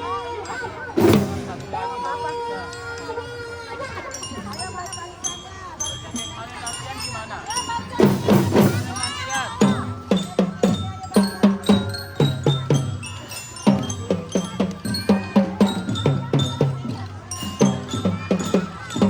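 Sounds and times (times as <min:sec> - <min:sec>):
mallet bells melody: 0:00.4 - 0:19.0
marching drums beating: 0:01.0 - 0:02.1, 0:07.8 - 0:19.0.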